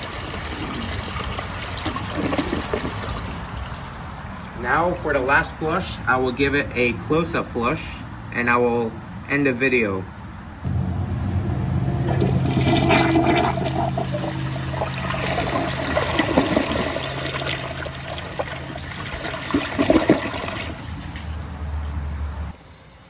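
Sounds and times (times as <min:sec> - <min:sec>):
toilet flushing: 0:00.0 - 0:04.1, 0:10.7 - 0:22.2.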